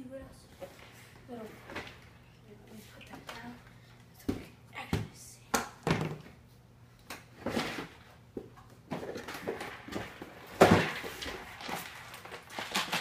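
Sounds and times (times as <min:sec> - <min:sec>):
packaging rustling: 0:10.7 - 0:13.0.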